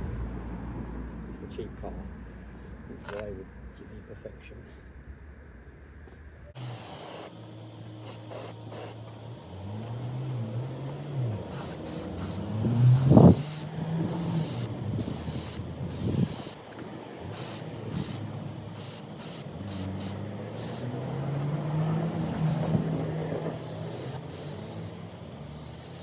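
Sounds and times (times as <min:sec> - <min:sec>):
aerosol spray can hissing: 0:06.6 - 0:07.4, 0:08.0 - 0:09.0, 0:11.5 - 0:16.7, 0:17.3 - 0:26.0.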